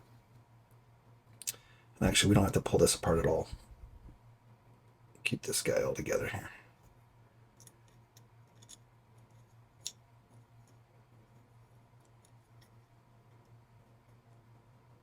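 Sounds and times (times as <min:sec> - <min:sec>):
faint clicks of small parts: 0:00.3 - 0:01.8, 0:06.8 - 0:14.4
low hum: 0:02.0 - 0:04.4.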